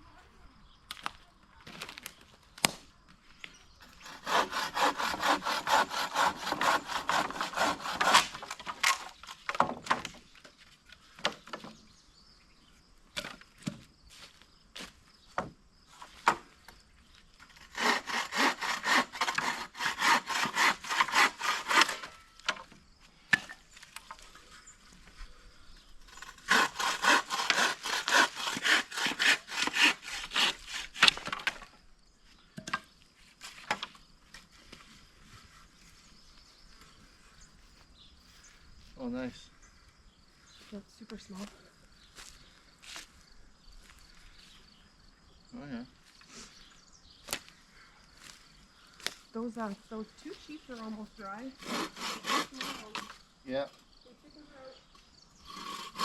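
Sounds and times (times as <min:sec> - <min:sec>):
hand saw cutting wood: 0:03.8 - 0:09.2, 0:17.5 - 0:22.6, 0:26.1 - 0:31.7, 0:51.5 - 0:53.2, 0:55.4 - 0:56.0.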